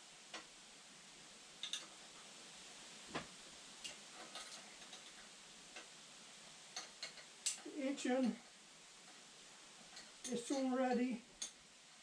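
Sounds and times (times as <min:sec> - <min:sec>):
faint hiss: 0:00.0 - 0:12.0
light sharp clicks and taps: 0:06.7 - 0:08.4.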